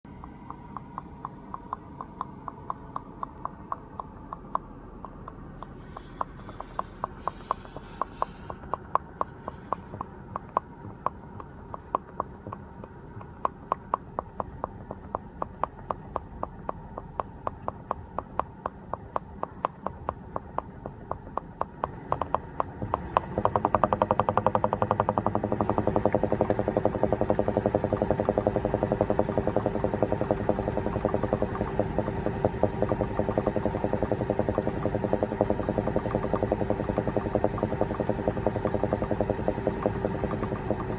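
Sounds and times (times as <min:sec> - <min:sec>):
popping clicks: 0:00.0 - 0:40.9
low hum: 0:24.6 - 0:40.9.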